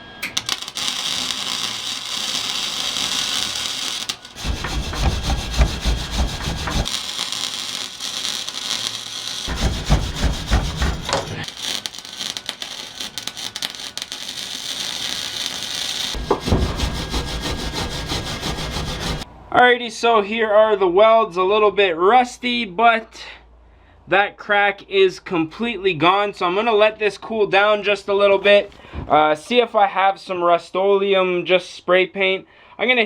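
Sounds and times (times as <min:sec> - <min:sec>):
welding arc crackling: 0:00.3 - 0:19.3
deep rumbling bursts: 0:04.4 - 0:06.9, 0:09.5 - 0:11.2, 0:16.2 - 0:19.2.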